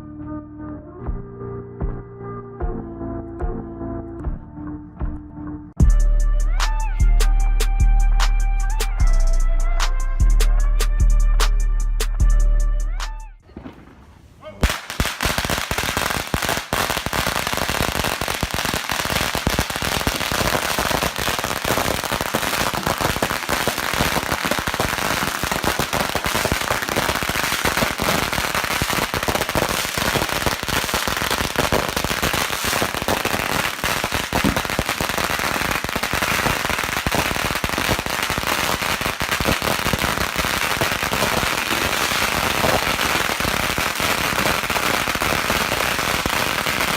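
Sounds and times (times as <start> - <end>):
fireworks and firecrackers banging: 13.4 - 46.9.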